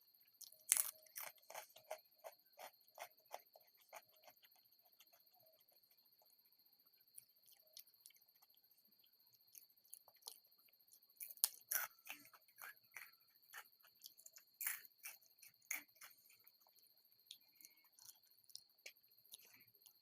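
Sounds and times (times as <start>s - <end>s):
faint high-pitched whine: 0.0s - 20.0s
person eating crunches: 0.4s - 5.1s, 9.3s - 20.0s.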